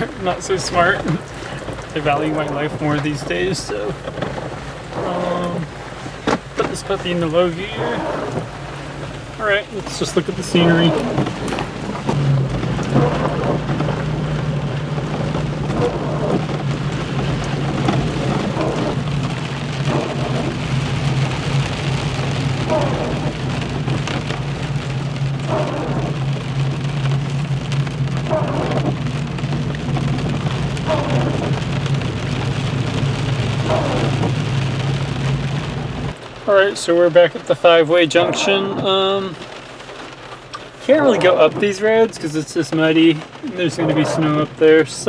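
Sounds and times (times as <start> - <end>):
engine humming: 0.0 - 45.0
heavy rain on a vehicle: 0.0 - 45.0.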